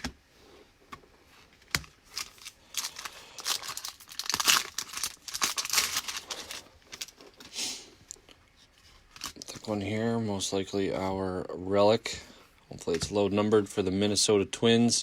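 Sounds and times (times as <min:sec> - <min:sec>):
card pack wrapper tearing and crinkling: 0:01.7 - 0:07.2, 0:09.1 - 0:09.6.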